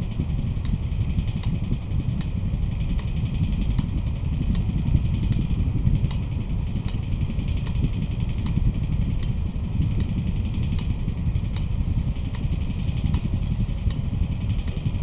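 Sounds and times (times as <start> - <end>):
electric fan running: 0.0 - 15.0.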